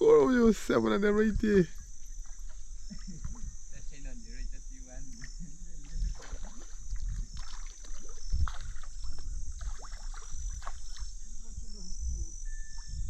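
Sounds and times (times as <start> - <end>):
water splashing: 5.8 - 11.2.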